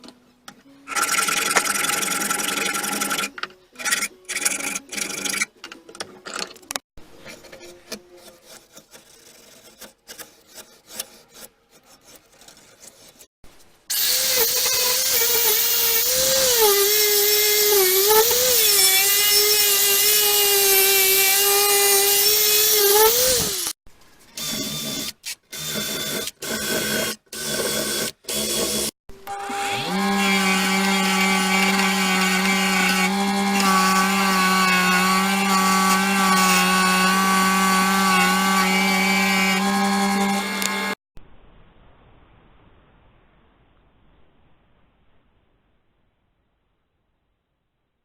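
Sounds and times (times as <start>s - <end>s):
handwork sounds: 0.9s - 13.3s
power tool whining: 24.4s - 41.0s.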